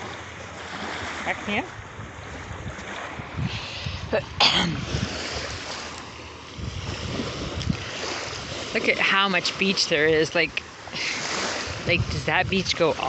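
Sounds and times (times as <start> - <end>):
ocean surf: 0.0 - 13.0
wind buffeting microphone: 0.8 - 9.2, 11.3 - 13.0.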